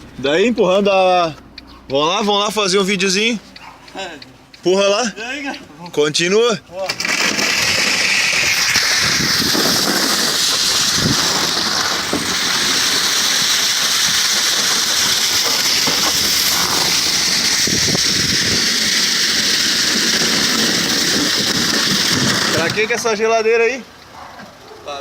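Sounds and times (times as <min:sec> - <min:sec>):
refrigerator scraping over ground: 0:06.8 - 0:23.7.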